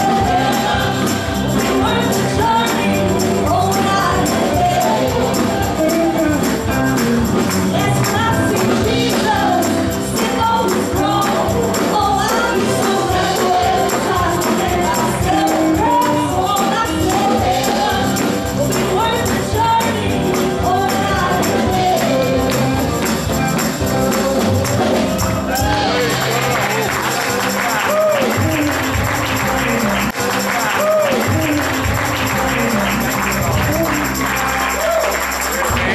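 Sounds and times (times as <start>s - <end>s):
tambourine beat: 0.0s - 35.9s
voices singing gospel: 0.0s - 35.9s.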